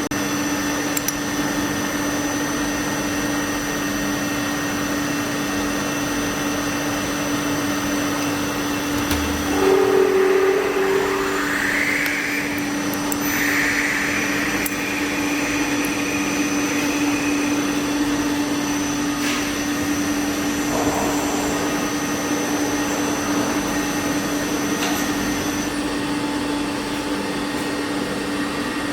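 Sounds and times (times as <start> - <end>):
machine hum with high whine: 0.0 - 28.9
brief higher tones: 8.9 - 12.8.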